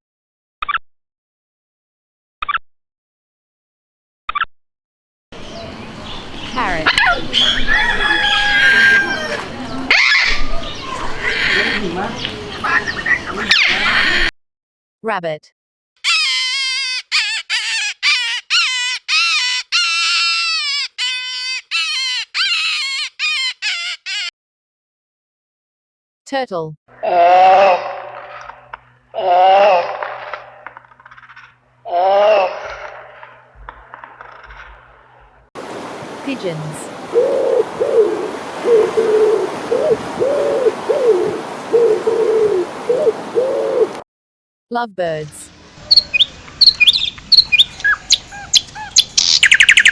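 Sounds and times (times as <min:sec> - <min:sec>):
rabbit squealing: 0:16.0 - 0:24.3
pigeons cooing: 0:37.0 - 0:44.0.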